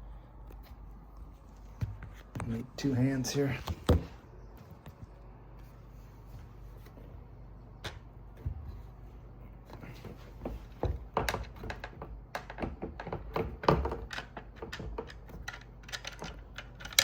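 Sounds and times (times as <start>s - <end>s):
light knocks and clicks of parts: 9.6s - 17.0s.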